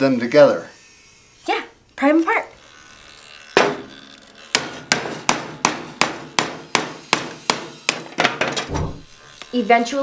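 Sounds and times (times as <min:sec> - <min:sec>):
hammer blows on wood: 0:04.6 - 0:08.2.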